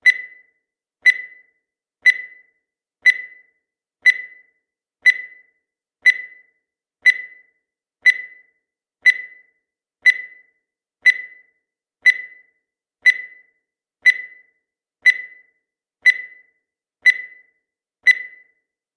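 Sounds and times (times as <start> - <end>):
short high beeps: 18.1 - 18.5.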